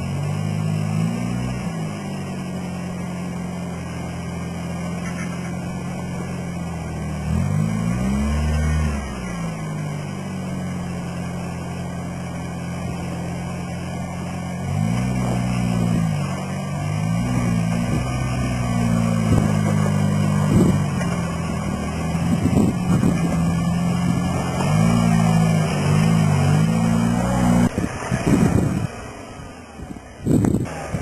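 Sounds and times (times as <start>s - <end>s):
car engine running and revving: 0.0s - 31.0s.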